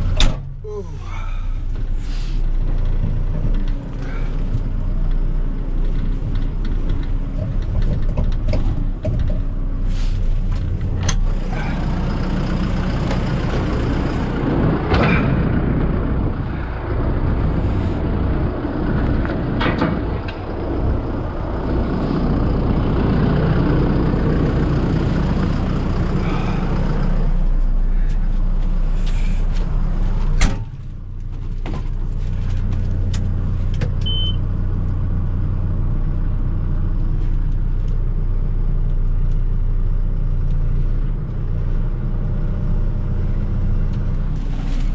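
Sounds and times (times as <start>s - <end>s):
heavy vehicle engine running: 0.0s - 44.9s.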